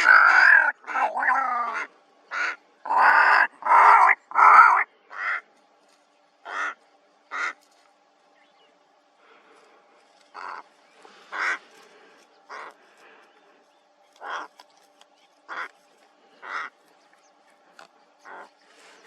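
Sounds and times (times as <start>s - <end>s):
ravens calling harshly: 0.0s - 5.6s, 6.4s - 7.7s, 10.2s - 14.7s, 15.4s - 19.0s.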